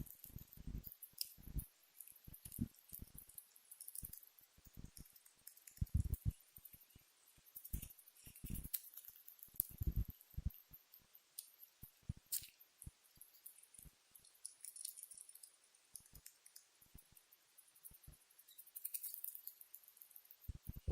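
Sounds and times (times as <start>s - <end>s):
rat grinding teeth: 0.0s - 20.9s
soft low thumps: 5.8s - 6.4s, 9.8s - 10.5s.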